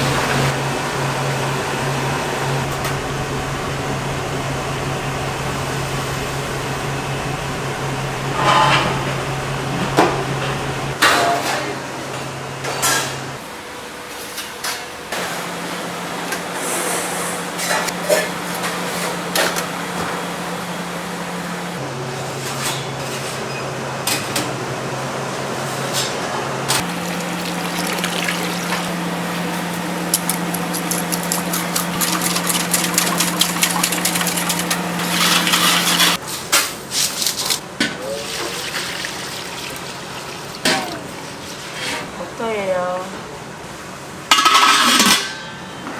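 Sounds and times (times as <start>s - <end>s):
machine hum: 13.4s - 21.8s, 26.8s - 36.2s
metal utensils and pans clanking: 13.4s - 21.8s, 26.8s - 36.2s.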